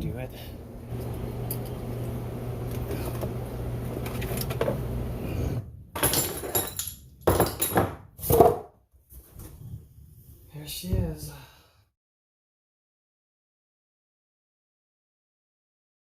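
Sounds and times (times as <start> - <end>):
steady low hum: 0.0 - 6.0.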